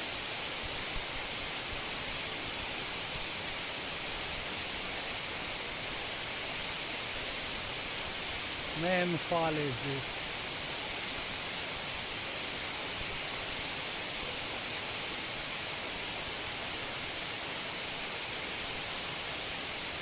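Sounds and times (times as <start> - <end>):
waterfall rushing: 5.8 - 11.1.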